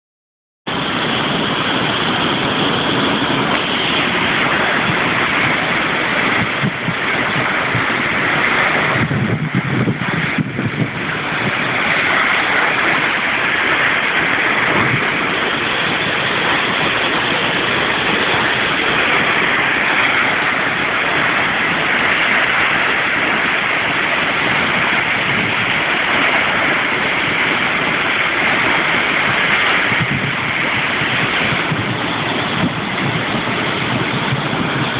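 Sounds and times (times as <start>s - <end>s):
low water rumble: 0.7s - 34.9s
waterfall rushing: 0.7s - 34.9s.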